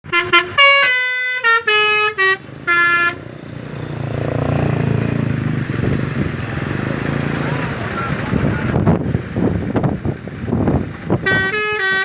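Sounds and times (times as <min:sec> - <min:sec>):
multi-tone bus horn melody: 0:00.0 - 0:04.2, 0:11.1 - 0:12.0
bus engine rumble: 0:00.0 - 0:12.0.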